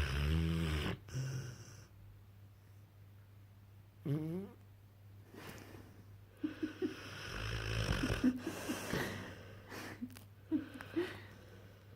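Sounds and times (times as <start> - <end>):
puppy snoring: 0.0 - 1.9, 4.0 - 4.6, 6.6 - 8.8.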